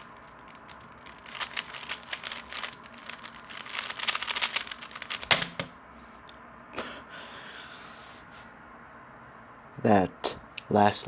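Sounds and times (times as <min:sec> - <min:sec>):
puzzle cube clicking: 0:00.0 - 0:05.8.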